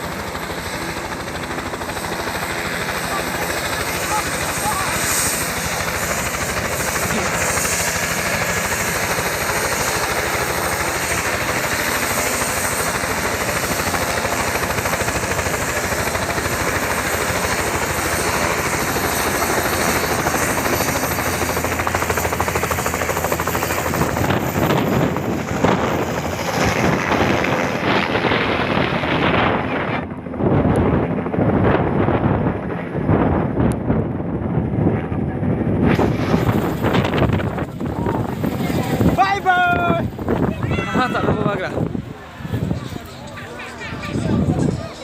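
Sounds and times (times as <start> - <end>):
helicopter rotor chopping: 0.0 - 45.0
wind buffeting microphone: 23.3 - 45.0.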